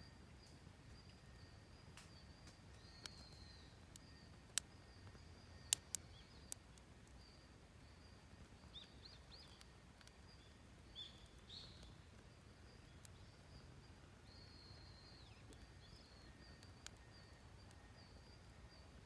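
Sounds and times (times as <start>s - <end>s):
bird chirps: 1.3s - 19.0s
wood fire popping: 1.9s - 7.2s, 8.2s - 14.2s, 15.1s - 17.8s.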